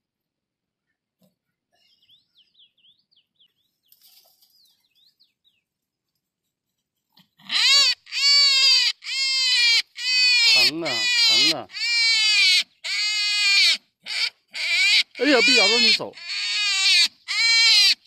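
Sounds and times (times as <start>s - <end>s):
rabbit screaming: 7.4s - 18.0s.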